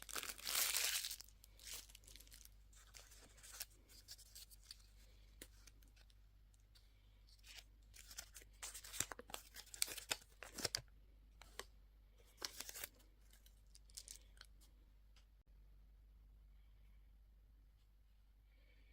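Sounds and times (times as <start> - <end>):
candy wrapper crinkling: 0.0 - 6.2, 7.4 - 10.8, 12.3 - 14.5.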